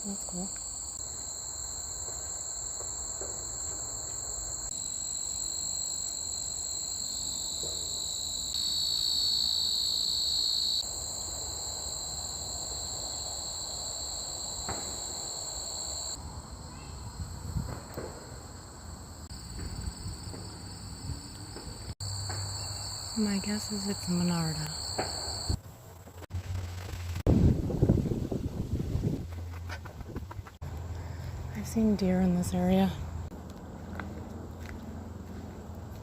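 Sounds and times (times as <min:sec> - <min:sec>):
insects chorus ringing: 0:00.0 - 0:17.6, 0:18.2 - 0:25.6.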